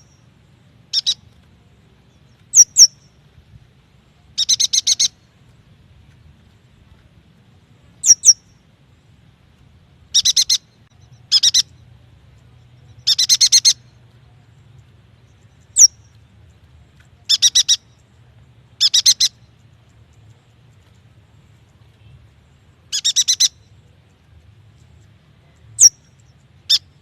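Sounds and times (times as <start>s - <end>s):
bird chattering notes: 8.0s - 8.4s, 22.9s - 23.6s.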